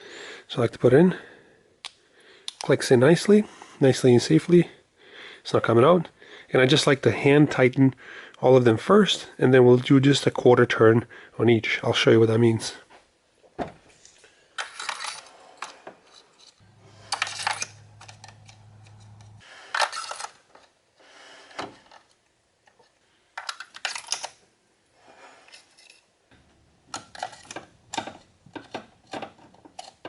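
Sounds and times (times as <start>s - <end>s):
metallic clinks and scraping: 14.6s - 20.4s, 25.4s - 26.1s, 26.9s - 28.3s.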